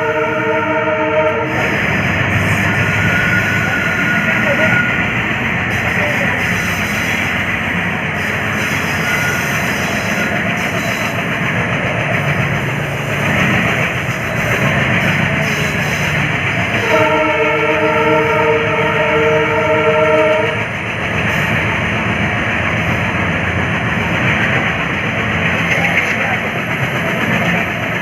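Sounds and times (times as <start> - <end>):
multi-tone train horn: 0.0 - 5.1, 8.2 - 11.2, 15.4 - 20.8
locomotive engine and rail noise: 0.0 - 28.0.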